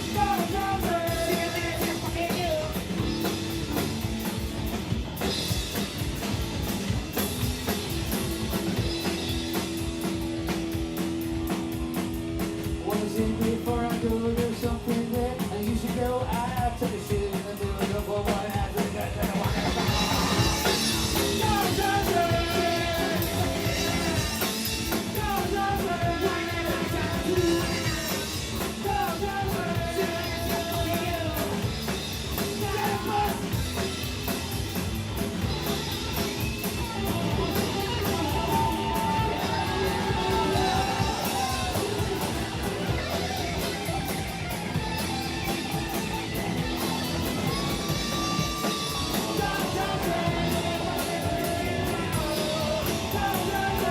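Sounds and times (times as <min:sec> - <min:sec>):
person singing: 0:00.0 - 0:02.9, 0:12.8 - 0:31.7, 0:32.3 - 0:33.6, 0:36.1 - 0:44.1, 0:47.0 - 0:53.9
distorted electric guitars: 0:00.0 - 0:16.2, 0:16.8 - 0:53.9
drum kit: 0:00.0 - 0:53.9.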